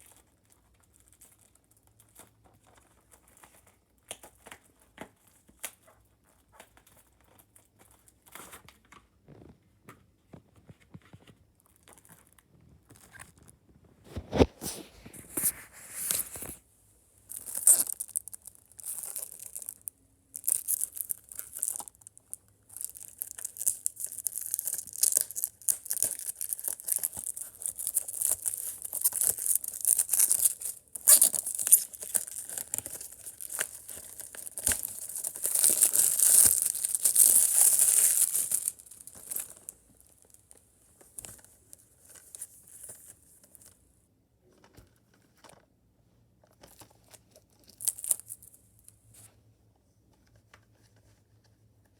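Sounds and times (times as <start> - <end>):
plastic shrink wrap tearing: 17.3 - 40.6, 47.6 - 48.5.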